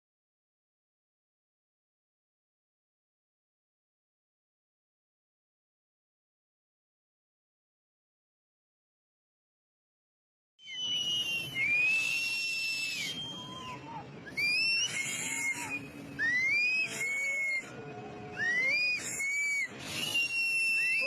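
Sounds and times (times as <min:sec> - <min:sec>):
animal high-pitched cries: 0:10.6 - 0:21.0
low background rush: 0:10.8 - 0:21.0.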